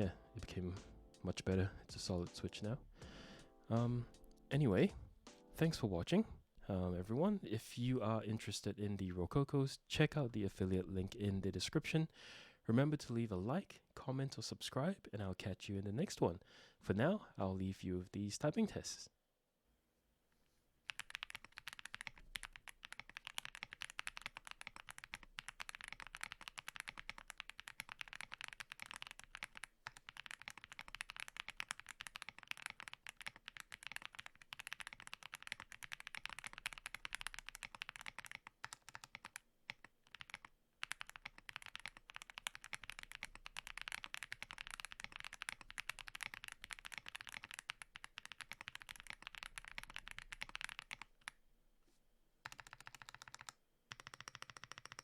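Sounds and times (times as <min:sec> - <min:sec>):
mechanical keyboard typing: 0:20.9 - 0:51.4, 0:52.4 - 0:55.0.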